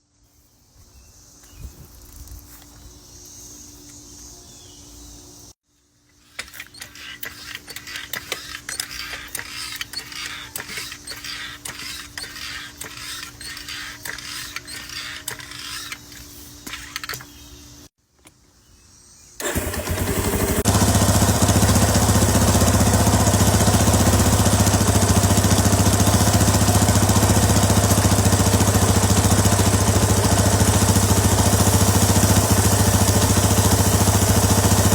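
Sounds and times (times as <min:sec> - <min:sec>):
atv engine running: 0:19.4 - 0:34.9.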